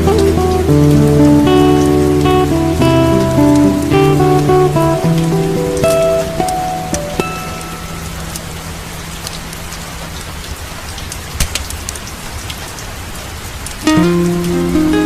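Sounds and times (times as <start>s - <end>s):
plucked string music: 0.0s - 9.4s, 13.8s - 15.0s
steady rain falling: 0.0s - 15.0s.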